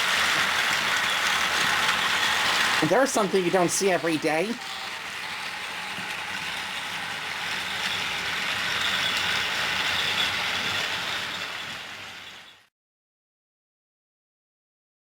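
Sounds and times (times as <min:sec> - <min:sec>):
toy trains whirring on plastic track: 0:00.0 - 0:12.7.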